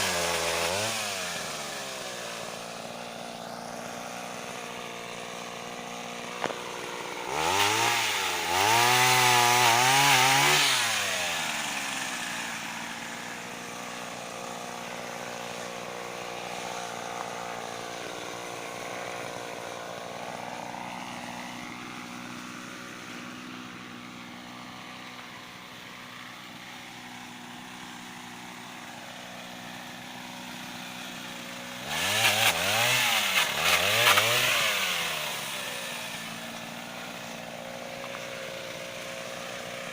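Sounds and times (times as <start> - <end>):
two-stroke engine idling and revving: 0.0 - 39.9.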